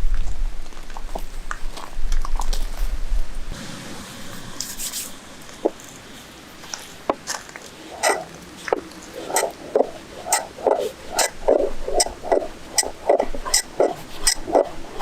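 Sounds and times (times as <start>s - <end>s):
person chewing food: 6.7s - 15.0s.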